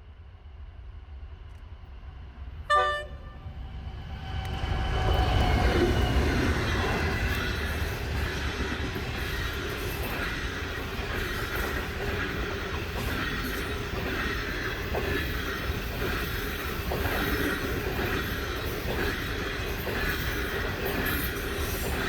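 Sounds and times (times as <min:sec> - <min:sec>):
train engine rumble: 0:00.0 - 0:22.0
train rolling by: 0:00.2 - 0:22.0
train horn blast: 0:02.7 - 0:03.6.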